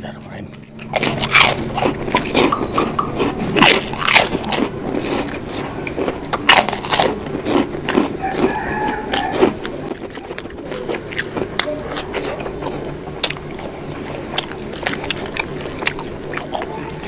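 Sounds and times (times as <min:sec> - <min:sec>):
biting crunching and chewing: 0:00.4 - 0:17.0
mouth smacks: 0:00.8 - 0:05.4.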